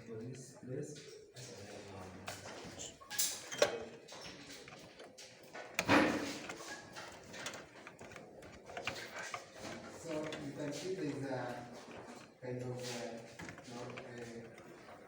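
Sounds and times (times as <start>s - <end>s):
knocks and rustles inside computer case: 5.8s - 6.6s.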